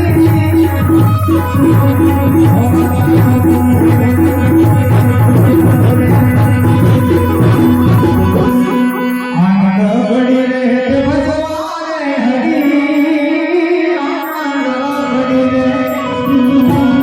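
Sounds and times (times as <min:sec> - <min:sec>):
instrumental accompaniment with drums: 0:00.0 - 0:09.7, 0:15.8 - 0:17.0
person singing devotional song: 0:00.0 - 0:17.0.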